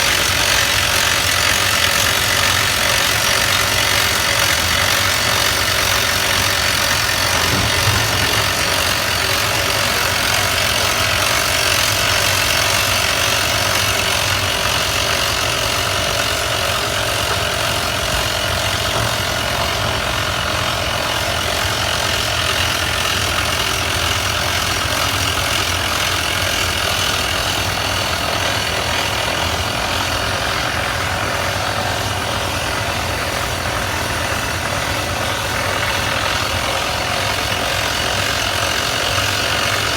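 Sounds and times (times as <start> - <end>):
rock drilling machine running: 0.0 - 39.9
low engine rumble: 2.8 - 14.7.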